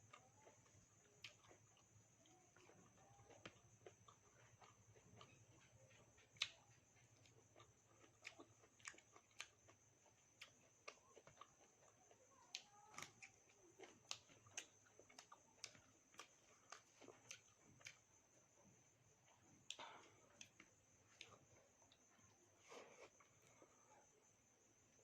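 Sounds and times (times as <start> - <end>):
chewing with wet mouth clicks: 0.0 - 18.2, 19.2 - 22.4.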